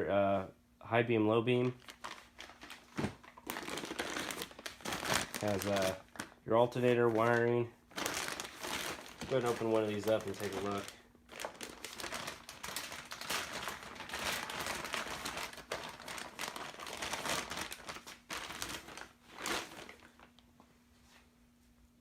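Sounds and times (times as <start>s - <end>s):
packaging crinkling and rustling: 1.5s - 20.5s.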